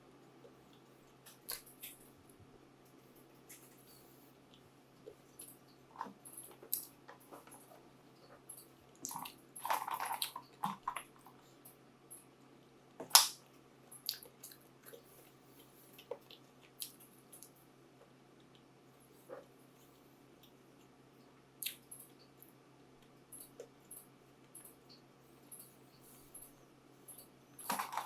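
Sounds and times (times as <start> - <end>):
chewing: 3.5 - 11.5, 14.0 - 17.6.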